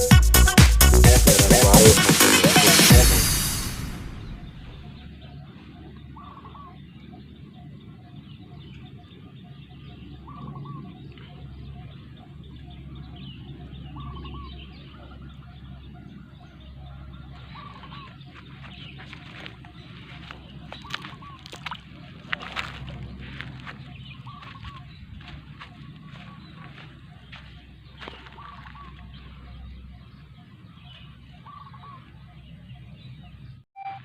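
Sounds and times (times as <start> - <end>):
electronic dance music: 0.0 - 4.9.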